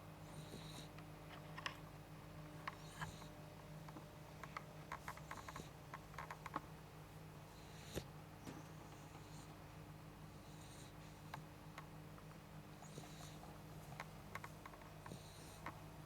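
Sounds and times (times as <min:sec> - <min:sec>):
low steady hum: 0:00.0 - 0:16.0
pet snoring softly: 0:00.2 - 0:01.0, 0:02.7 - 0:03.4, 0:04.9 - 0:06.5, 0:07.5 - 0:11.9, 0:12.6 - 0:15.9.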